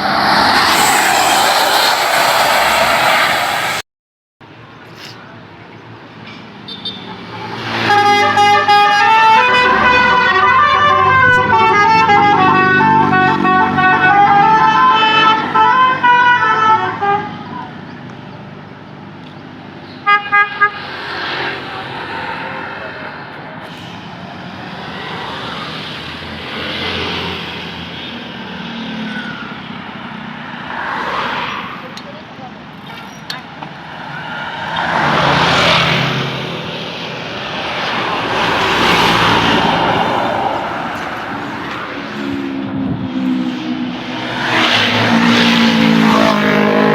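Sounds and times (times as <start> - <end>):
bus driving past: 0.0 - 3.8, 33.0 - 46.9
bus engine: 0.0 - 3.8, 4.4 - 46.9
multi-tone bus air horn: 6.7 - 17.7, 20.0 - 21.0.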